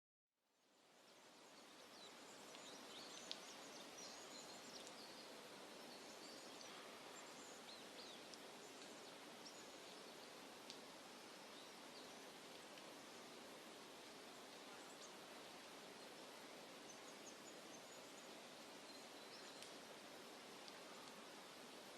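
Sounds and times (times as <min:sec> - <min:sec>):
low ambient hiss: 0:00.4 - 0:21.9
songbirds chirping: 0:00.6 - 0:21.9.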